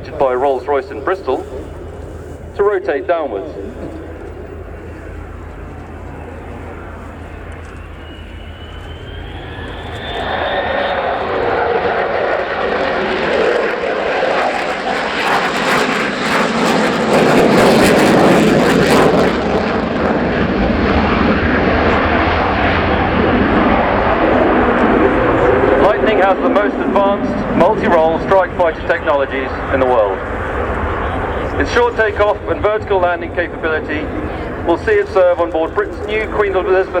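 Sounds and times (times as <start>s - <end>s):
fighter jet flypast: 0.0s - 37.0s
jet engine whine: 0.0s - 37.0s.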